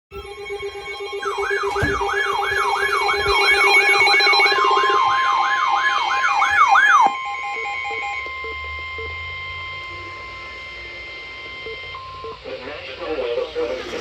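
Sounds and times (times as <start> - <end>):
rapid electronic buzz: 0.1 - 5.1
whooping alarm siren: 0.1 - 12.4
beeping tones: 0.1 - 12.6
steady electronic tone: 0.1 - 14.0.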